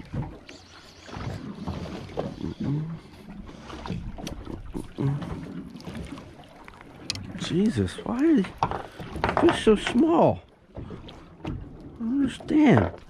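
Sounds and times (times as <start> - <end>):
boat creaking: 0.0 - 13.0
water slapping boat hull: 0.0 - 13.0.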